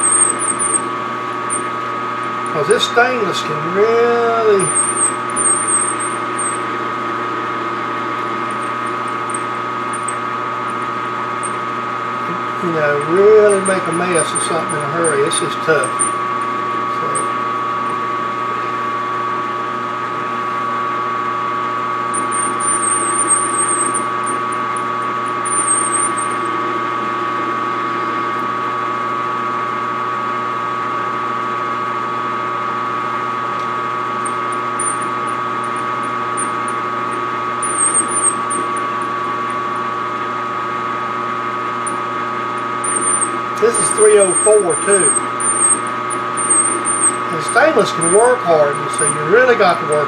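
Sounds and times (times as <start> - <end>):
cutting tool squealing on steel: 0.0 - 0.9, 2.6 - 6.7, 12.6 - 17.4, 22.2 - 26.4, 34.2 - 36.8, 37.6 - 39.1, 42.8 - 50.0
metal lathe humming and whining: 0.0 - 50.0.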